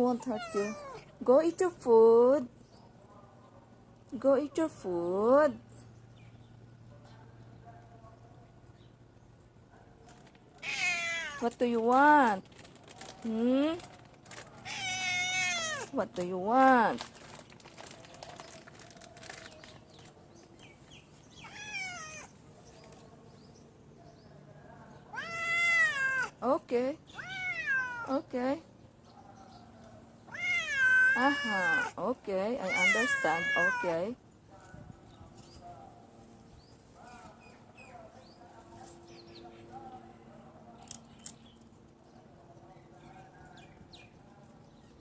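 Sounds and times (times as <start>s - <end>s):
cat meowing: 0.2s - 1.1s, 10.6s - 11.4s, 14.6s - 15.9s, 21.4s - 22.3s, 25.1s - 26.4s, 27.2s - 28.1s, 30.3s - 32.0s, 32.6s - 34.0s
small birds chirping: 13.0s - 40.0s, 40.7s - 45.0s.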